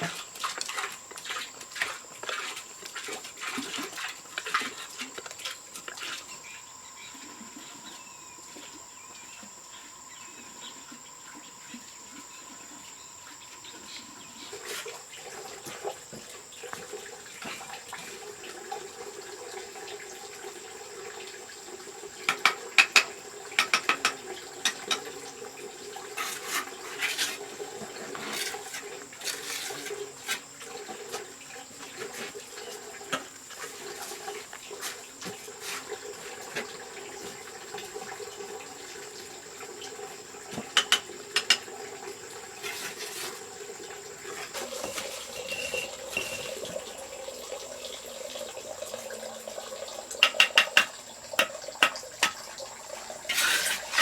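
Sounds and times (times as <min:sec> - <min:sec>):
running water: 0:00.0 - 0:54.0
sharp clinking taps: 0:22.3 - 0:24.2, 0:50.2 - 0:52.4.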